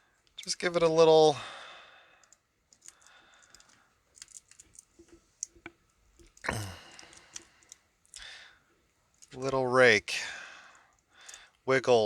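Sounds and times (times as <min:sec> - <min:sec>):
soft breath: 0:01.4 - 0:04.0, 0:06.5 - 0:08.8, 0:10.2 - 0:11.6.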